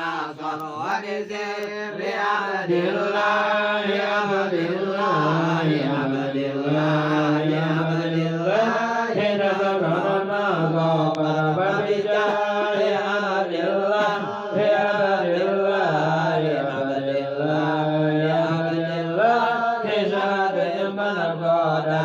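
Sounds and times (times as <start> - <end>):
voices chanting: 0.0 - 16.6.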